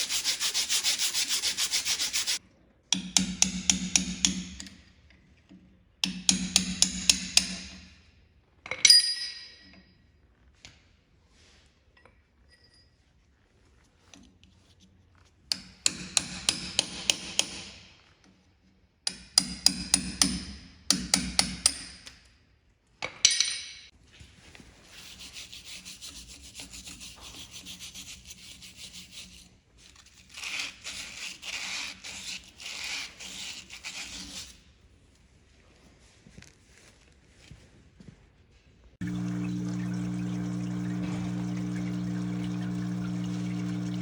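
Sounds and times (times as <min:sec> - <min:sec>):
hand scrubbing hard parts: 0:00.0 - 0:02.4.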